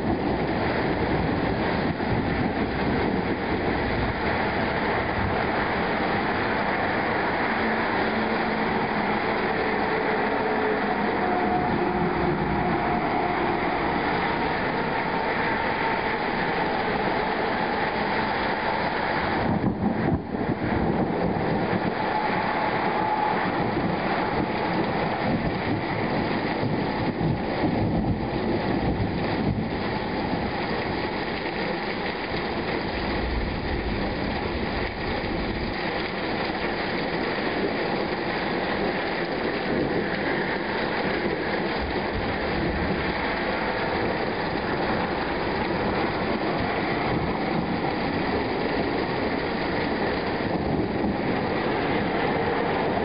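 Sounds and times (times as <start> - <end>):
heavy rain falling: 0.0 - 53.0.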